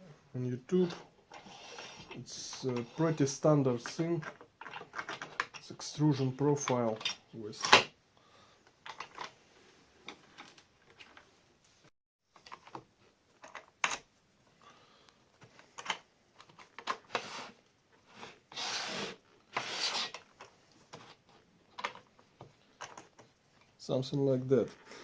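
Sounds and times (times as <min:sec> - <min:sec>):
metal parts clicks and knocks: 0:03.8 - 0:05.8, 0:06.6 - 0:07.9, 0:21.7 - 0:22.1, 0:22.8 - 0:23.3
sliding scrapes: 0:16.9 - 0:20.2.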